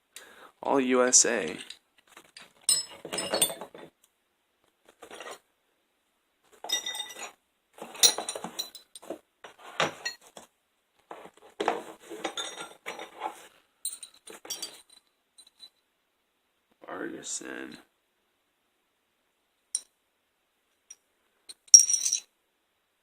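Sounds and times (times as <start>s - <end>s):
steel hand tools clinking: 2.6s - 3.7s, 6.6s - 7.3s, 7.9s - 9.1s.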